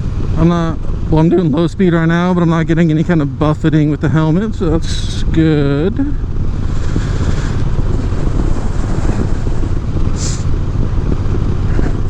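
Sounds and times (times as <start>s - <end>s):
motorcycle engine running: 0.0s - 12.0s
wind and road noise: 0.0s - 12.0s
short hiss: 6.6s - 10.5s.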